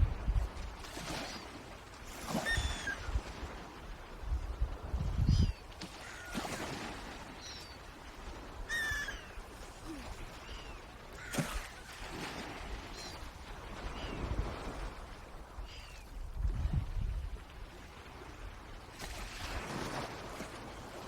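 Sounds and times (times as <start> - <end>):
low wind rumble: 0.0 - 0.8, 2.7 - 5.7, 13.4 - 18.7
birds calling: 2.4 - 3.1, 8.7 - 9.4.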